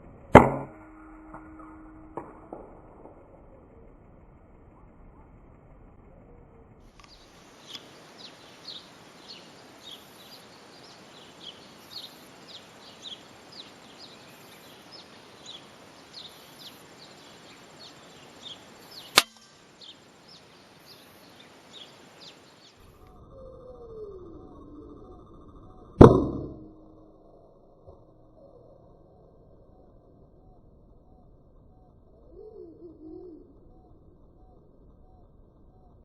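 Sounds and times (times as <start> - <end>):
birds chirping: 6.9 - 26.4, 28.1 - 36.0
outdoor hiss: 7.0 - 23.0
rifle shot: 19.1 - 19.6.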